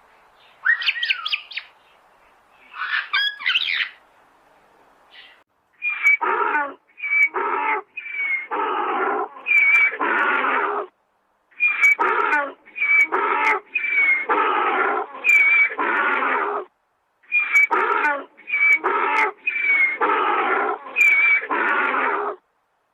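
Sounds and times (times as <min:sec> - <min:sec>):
animal squeaky and harsh calls: 0:05.8 - 0:10.9, 0:11.5 - 0:22.4.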